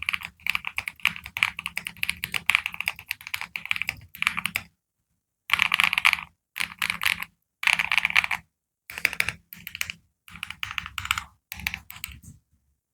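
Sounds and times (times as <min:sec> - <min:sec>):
rapid keyboard keystrokes: 0:00.0 - 0:04.6, 0:05.5 - 0:12.2.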